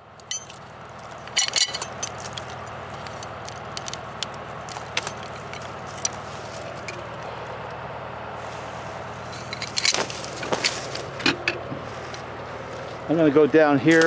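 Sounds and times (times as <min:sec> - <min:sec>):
tractor diesel engine idling: 0:00.0 - 0:14.0
sharp clicks and crackles: 0:00.2 - 0:07.0.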